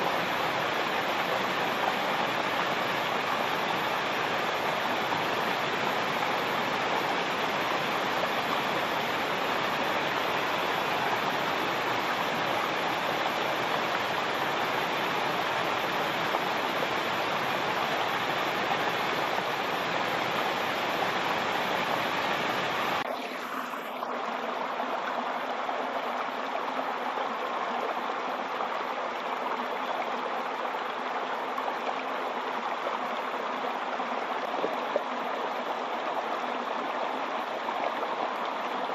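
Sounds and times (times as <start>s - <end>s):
waterfall rushing: 0.0s - 25.8s
quieter water sound: 0.0s - 38.9s.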